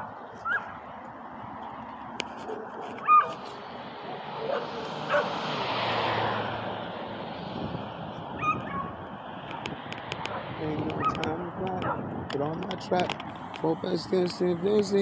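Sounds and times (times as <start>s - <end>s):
vehicle passing: 0.0s - 15.0s
dog whimpering yips: 3.0s - 3.3s, 8.4s - 9.0s.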